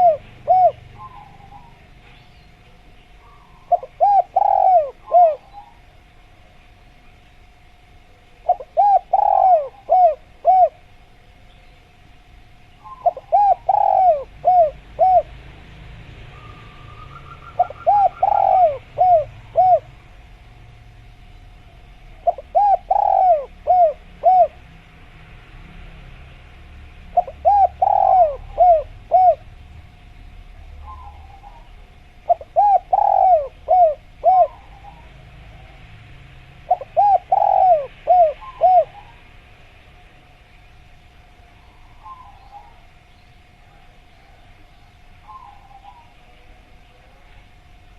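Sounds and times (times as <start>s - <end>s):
dove cooing: 0.0s - 2.2s, 3.2s - 6.0s, 8.4s - 11.1s, 12.8s - 15.6s, 16.3s - 20.3s, 21.6s - 24.7s, 27.1s - 29.6s, 30.6s - 35.9s, 36.6s - 39.3s, 41.6s - 43.0s, 45.2s - 47.4s.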